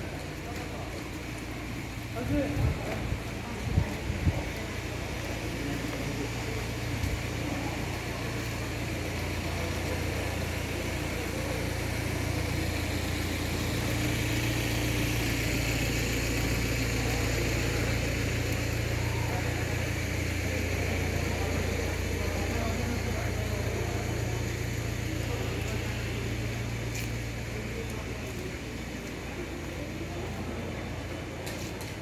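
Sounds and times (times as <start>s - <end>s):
motor vehicle engine hum: 0.0s - 32.0s.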